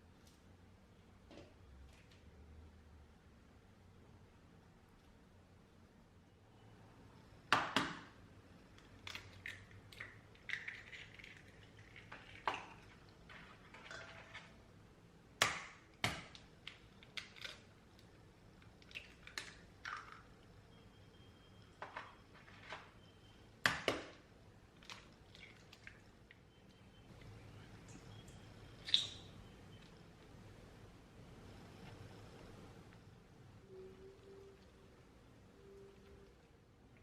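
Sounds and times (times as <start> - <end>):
utensils and dishes clattering: 13.3 - 14.6.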